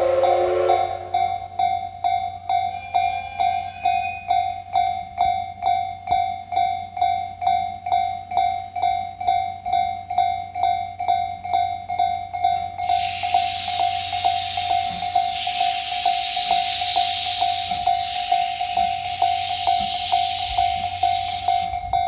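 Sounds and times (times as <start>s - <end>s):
steam locomotive hissing: 0.0s - 1.3s, 12.8s - 22.0s
level crossing alarm bell: 0.0s - 22.0s.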